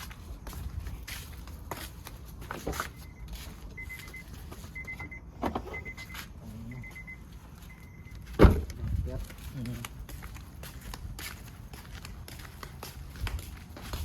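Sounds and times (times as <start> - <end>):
high electronic beeps: 2.9 - 8.3.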